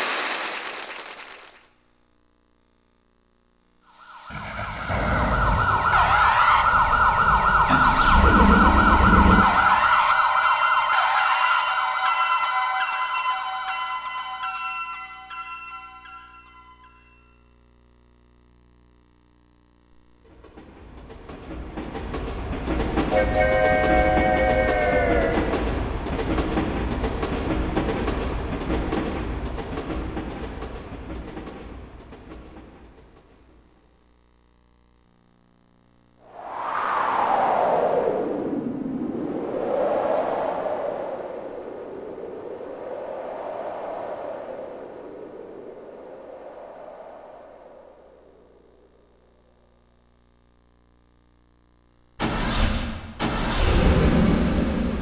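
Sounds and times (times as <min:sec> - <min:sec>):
electronic siren wail: 0:03.9 - 0:12.9, 0:23.1 - 0:25.7
train rumbling with wheel clatter: 0:20.3 - 0:33.4
chiming bell-like tones: 0:23.1 - 0:25.4
train whistle dropping in pitch: 0:23.1 - 0:25.7.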